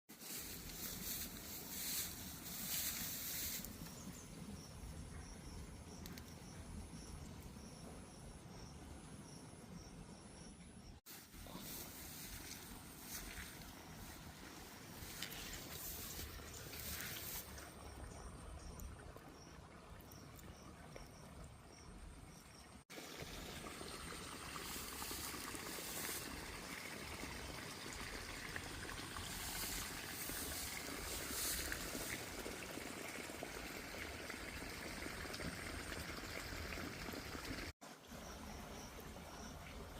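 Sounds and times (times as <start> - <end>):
insects chirping: 0.2 - 22.8, 23.4 - 32.4, 38.2 - 39.7
water trickling: 11.6 - 39.9.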